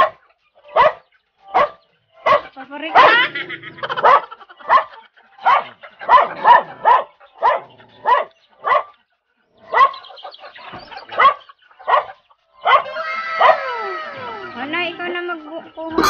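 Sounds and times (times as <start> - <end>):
dog barking: 0.0 - 3.3, 4.0 - 9.0, 9.7 - 10.1, 11.1 - 13.7.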